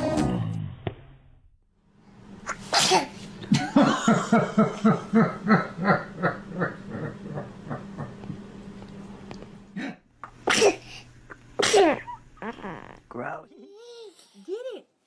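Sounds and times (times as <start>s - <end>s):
baby sneezing: 2.4s - 3.2s, 10.2s - 13.1s.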